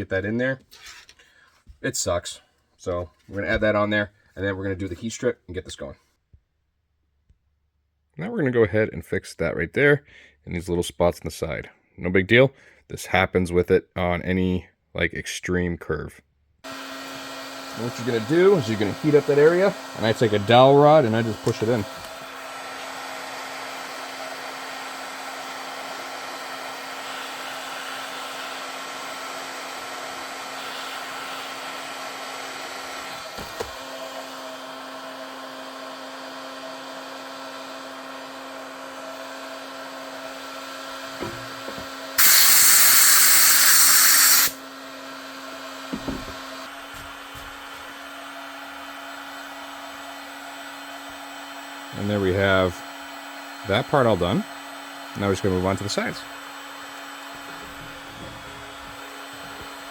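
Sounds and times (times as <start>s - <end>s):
heat gun motor hum: 16.7s - 59.9s
loud rushing hiss: 42.2s - 44.6s.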